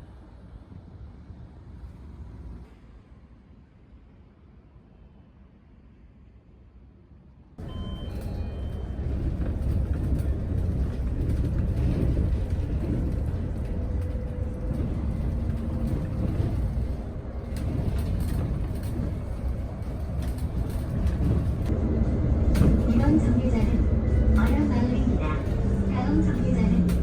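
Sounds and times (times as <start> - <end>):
bus engine and road rumble: 0.0 - 27.0
light rattles and clicks: 8.2 - 21.7.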